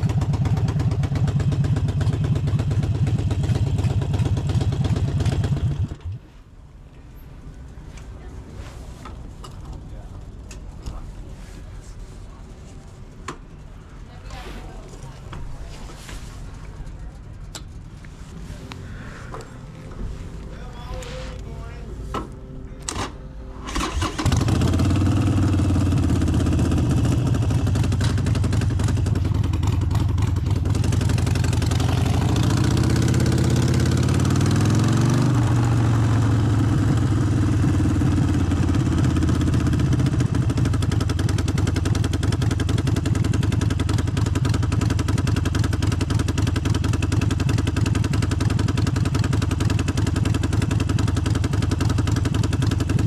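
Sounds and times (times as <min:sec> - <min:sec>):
motorcycle engine starting and running: 0:00.0 - 0:06.3, 0:21.4 - 0:53.0.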